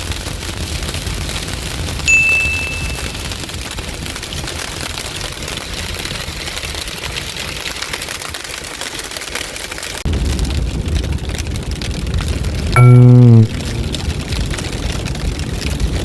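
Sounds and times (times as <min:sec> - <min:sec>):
rain pattering: 0:00.0 - 0:02.1, 0:03.0 - 0:12.8, 0:13.7 - 0:16.0.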